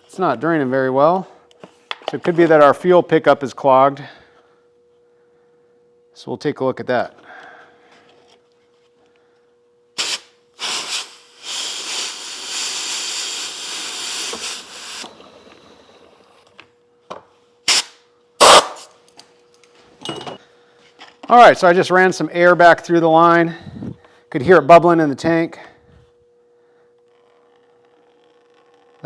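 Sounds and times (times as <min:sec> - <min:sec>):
compressed air blasts: 0:10.0 - 0:15.1, 0:17.7 - 0:18.9
compressed air hiss: 0:10.0 - 0:15.1, 0:17.7 - 0:18.9.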